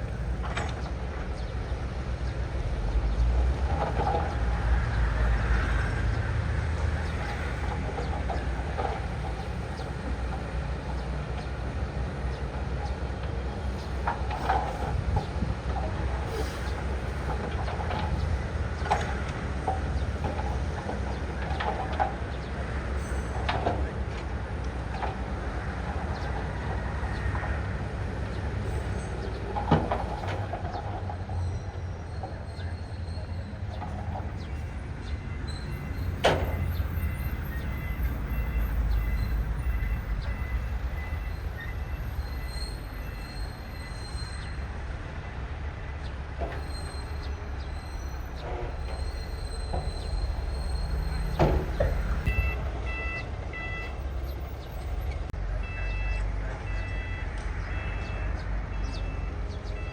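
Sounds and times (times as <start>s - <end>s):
diesel engine rumble: 0.0s - 59.9s
steel tracks squealing and clanking: 3.0s - 59.9s
beeping: 49.8s - 54.0s.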